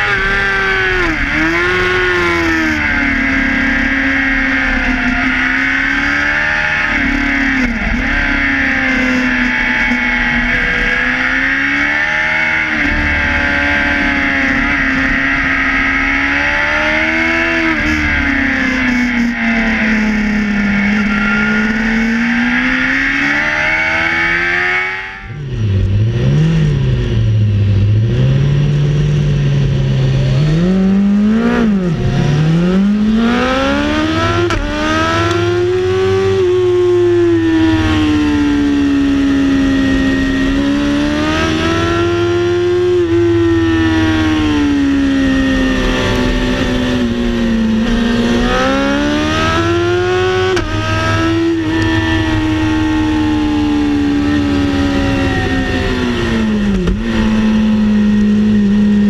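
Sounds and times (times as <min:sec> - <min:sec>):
race car engine revving: 0:00.0 - 0:59.0.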